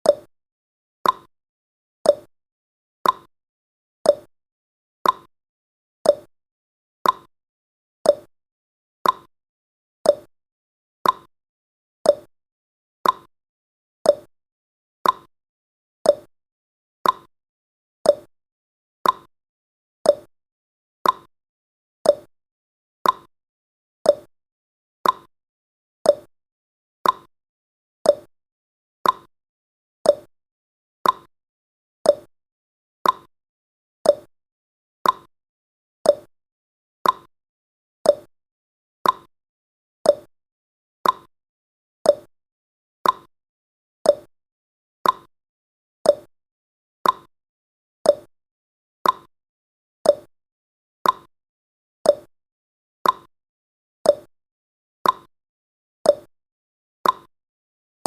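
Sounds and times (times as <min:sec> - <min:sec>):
clock ticking: 0:31.0 - 0:31.3, 0:37.0 - 0:37.3, 0:39.0 - 0:39.3, 0:41.0 - 0:41.3, 0:45.0 - 0:45.3, 0:47.0 - 0:47.3.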